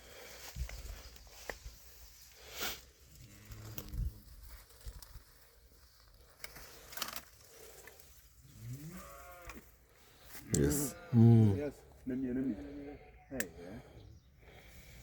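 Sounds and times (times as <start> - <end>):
cow mooing: 8.6 - 9.6, 10.5 - 11.7.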